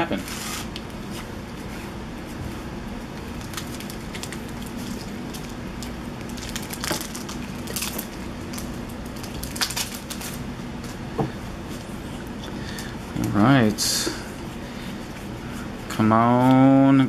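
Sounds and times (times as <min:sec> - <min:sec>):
foil wrappers crinkling and tearing: 0:03.1 - 0:10.4.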